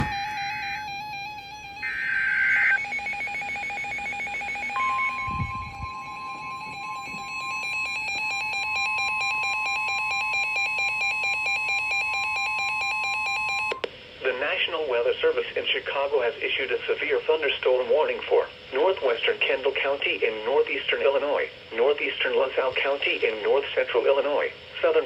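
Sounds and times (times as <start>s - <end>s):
steady high alert tone: 0.0s - 13.8s
screech of digital data tones: 1.6s - 4.1s.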